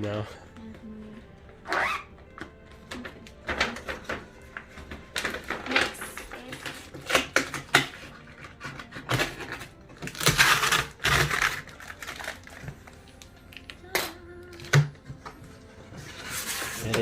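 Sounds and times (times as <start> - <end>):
packaging rustling and tearing: 1.7 - 14.9, 15.9 - 17.0
packaging knocks and clicks: 2.2 - 15.4.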